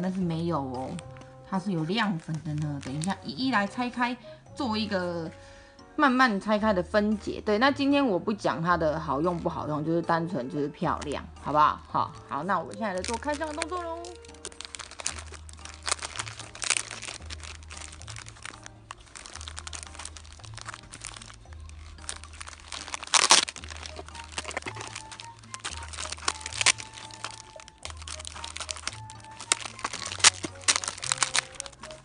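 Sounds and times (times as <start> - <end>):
plastic packaging crinkling: 0.8 - 3.8, 11.9 - 32.0.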